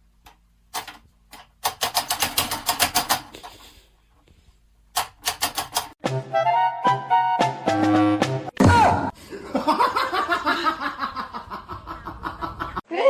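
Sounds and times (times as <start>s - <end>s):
rapid sharp clicking: 0.3s - 3.5s, 4.9s - 6.0s.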